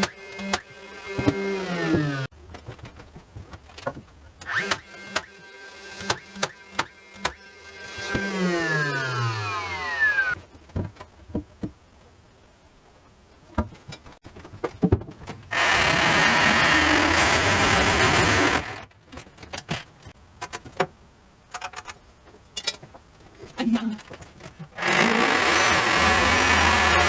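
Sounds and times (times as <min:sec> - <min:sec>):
power saw cutting: 0:00.0 - 0:02.3, 0:04.5 - 0:10.4, 0:15.5 - 0:18.9, 0:24.8 - 0:27.0.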